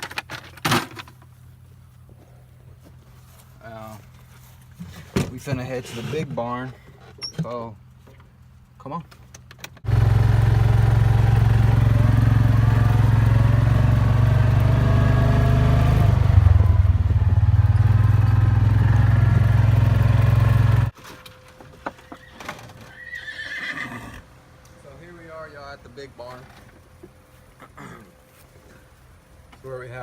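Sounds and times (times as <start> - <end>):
vehicle engine running: 9.8 - 21.0.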